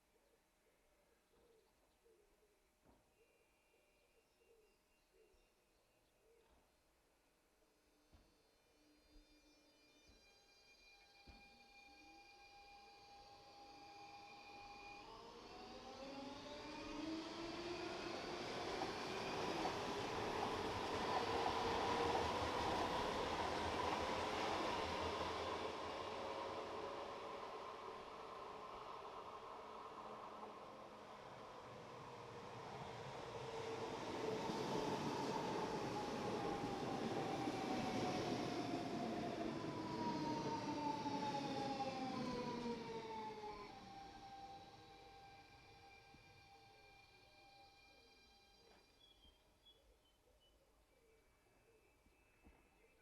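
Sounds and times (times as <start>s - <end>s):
train whine climbing in pitch: 8.6s - 49.7s
train low rumble: 11.2s - 49.2s.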